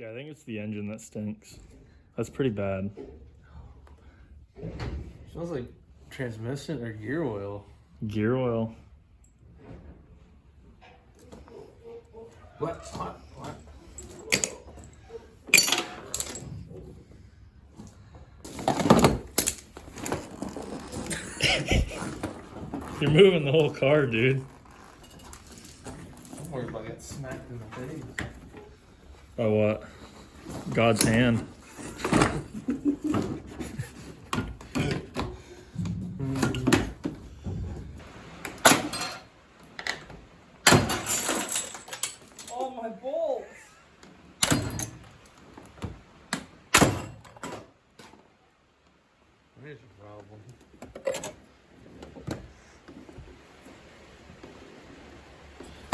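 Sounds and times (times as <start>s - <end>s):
metal tools clanking: 12.7s - 16.8s, 18.5s - 29.2s, 38.6s - 40.1s, 40.7s - 42.8s, 44.4s - 45.2s.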